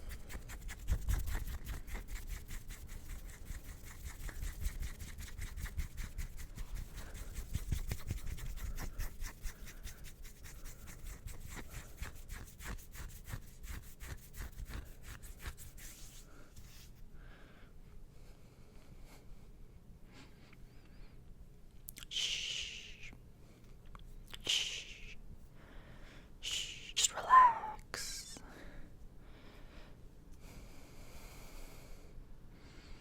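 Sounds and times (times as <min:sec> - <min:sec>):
hands rubbing and scratching: 0:00.0 - 0:17.0.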